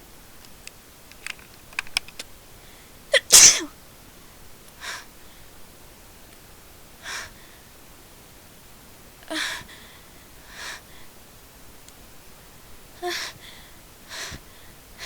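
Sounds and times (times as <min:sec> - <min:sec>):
soft breaths: 0:02.4 - 0:15.0
person sneezing loudly: 0:03.1 - 0:03.7.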